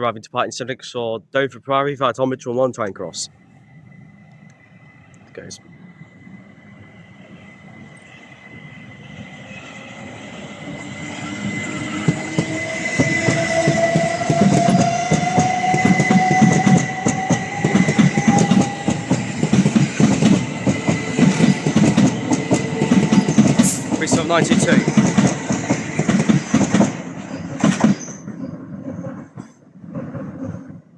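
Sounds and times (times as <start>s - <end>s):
electric train motor whine: 3.4s - 24.2s
train wheels clickety-clack: 10.7s - 30.8s.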